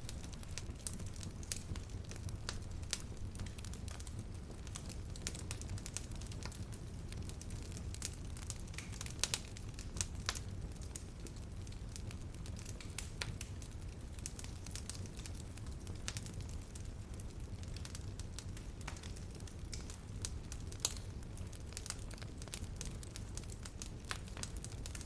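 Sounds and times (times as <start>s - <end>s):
fire popping: 0.0s - 25.0s
low rumble of flames: 0.0s - 25.0s
wood fire crackling: 0.0s - 25.0s.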